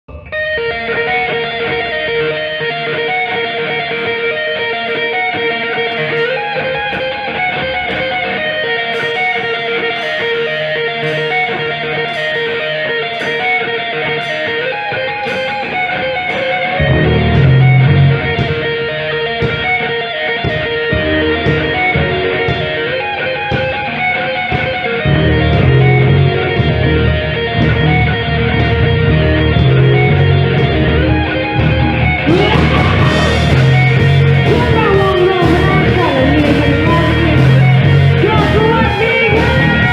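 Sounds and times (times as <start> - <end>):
instrumental band music with guitar: 0.0 - 39.9
heavy low bass: 16.8 - 18.6, 25.0 - 39.9.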